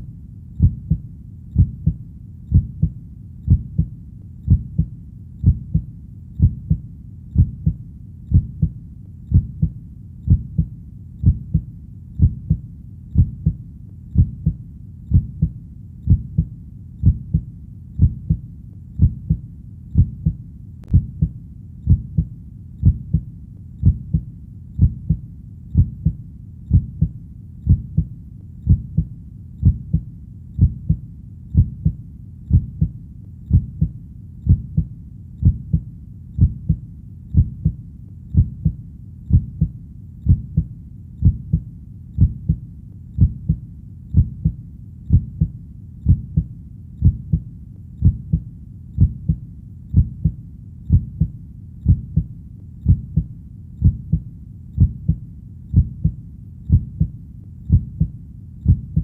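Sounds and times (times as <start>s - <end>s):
heartbeat double thump: 0.6s - 1.0s, 1.6s - 3.9s, 4.5s - 6.8s, 7.4s - 12.6s, 13.2s - 13.6s, 14.2s - 18.4s, 19.0s - 19.4s, 20.0s - 24.2s, 24.8s - 25.2s, 25.8s - 27.1s, 27.7s - 28.1s, 28.7s - 30.0s, 31.6s - 32.9s, 33.5s - 33.9s, 34.5s - 35.8s, 38.4s - 39.7s, 40.3s - 41.6s, 42.2s - 42.6s, 43.2s - 43.6s, 44.2s - 45.5s, 46.1s - 47.4s, 48.0s - 48.4s, 49.0s - 54.2s, 54.8s - 57.1s, 57.7s - 59.0s.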